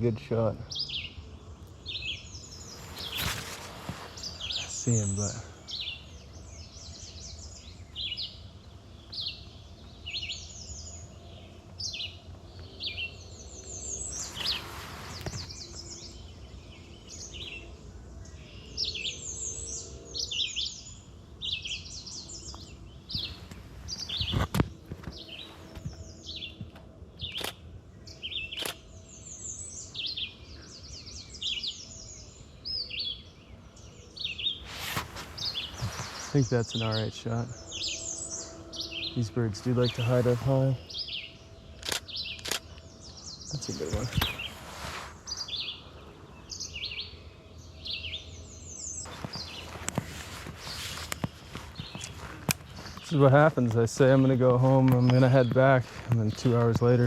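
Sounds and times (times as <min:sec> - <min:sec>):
songbirds chirping: 0:00.0 - 0:57.0
sharp clicks: 0:26.7 - 0:27.6, 0:28.6 - 0:28.8, 0:41.8 - 0:42.9.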